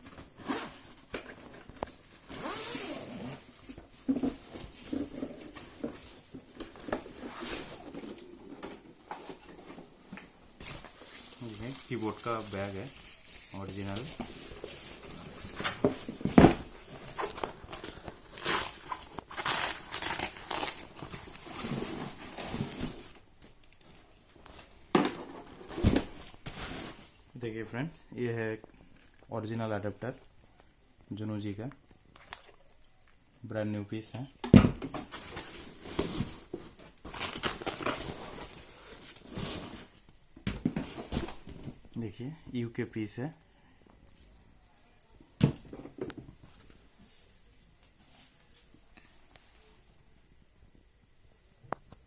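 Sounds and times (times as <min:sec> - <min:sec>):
packaging rustling and crinkling: 0:00.0 - 0:27.2, 0:34.8 - 0:41.9
packaging crinkling and tearing: 0:17.0 - 0:23.0, 0:37.0 - 0:40.0.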